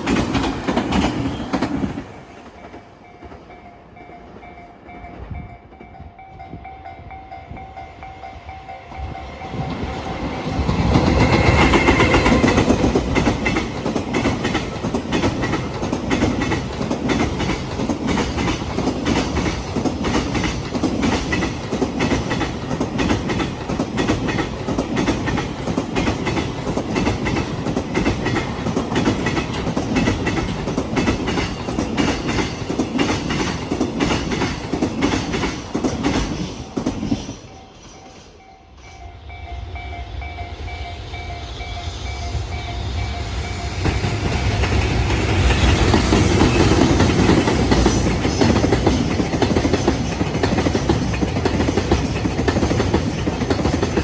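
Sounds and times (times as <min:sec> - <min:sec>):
train wheels clickety-clack: 0:00.0 - 0:06.6, 0:08.6 - 0:39.0, 0:40.1 - 0:54.0
freight train passing: 0:00.0 - 0:54.0.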